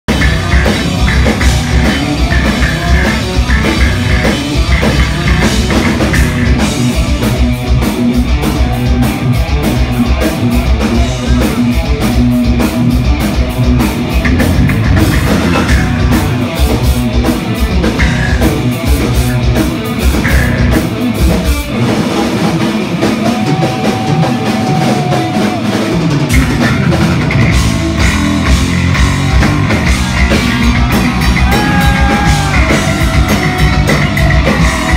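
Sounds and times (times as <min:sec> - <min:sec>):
bass guitar: 0:00.0 - 0:34.9
drum kit: 0:00.0 - 0:34.9.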